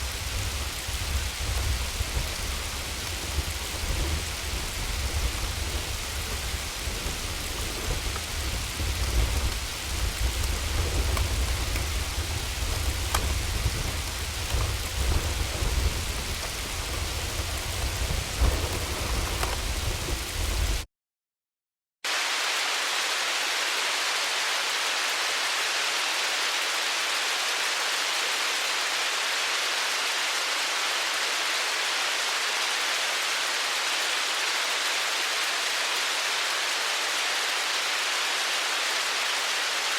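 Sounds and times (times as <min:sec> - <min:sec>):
hail and rain pelting: 0:00.0 - 0:20.8, 0:22.1 - 0:39.9
sharp hail hits: 0:00.0 - 0:20.8.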